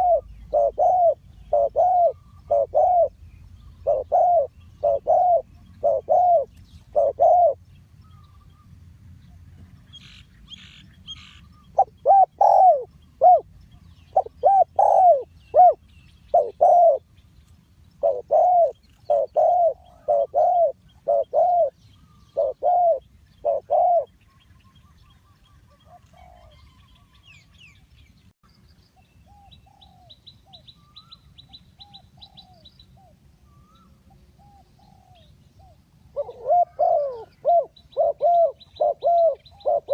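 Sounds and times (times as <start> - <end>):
dove cooing: 0.0 - 8.3, 11.2 - 17.1, 18.0 - 24.2, 25.2 - 27.1, 31.8 - 39.9
faint bird trill: 0.0 - 8.8
small birds chirping faintly: 0.0 - 39.9.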